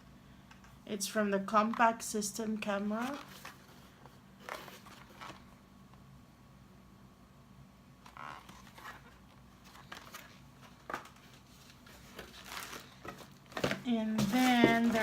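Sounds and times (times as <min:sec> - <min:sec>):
low steady hum: 0:00.0 - 0:15.0
packaging rustling and clicks: 0:04.4 - 0:05.5, 0:08.1 - 0:15.0.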